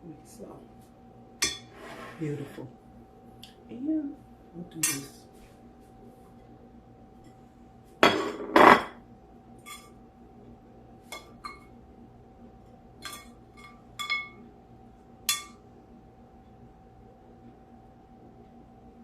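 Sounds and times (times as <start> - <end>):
utensil scraping a pan: 1.6 - 2.6.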